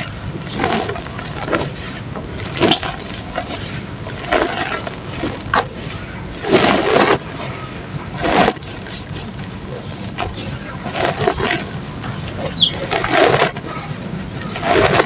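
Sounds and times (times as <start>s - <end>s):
crunchy cracks: 0.0s - 15.0s
mud crumbling in water: 0.0s - 15.0s.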